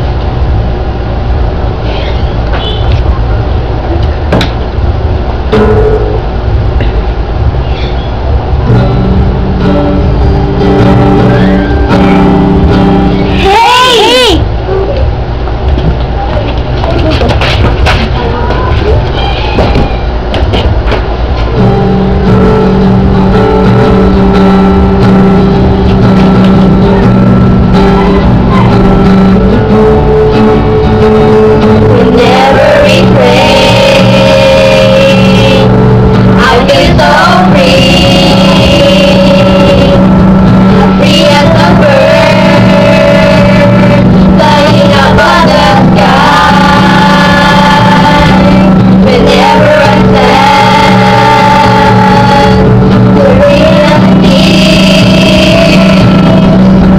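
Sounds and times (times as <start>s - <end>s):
person singing: 26.8s - 30.4s, 31.8s - 35.8s, 36.4s - 56.9s.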